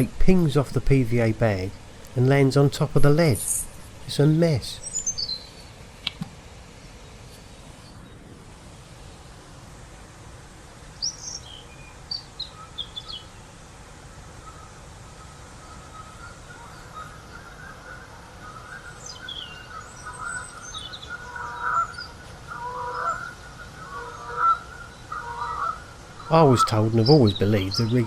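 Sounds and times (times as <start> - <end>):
birds chirping: 0.0 - 8.3, 10.9 - 28.0
faint steady hiss: 0.0 - 28.0
low bird calls: 3.2 - 5.8, 10.9 - 13.5, 14.1 - 28.0.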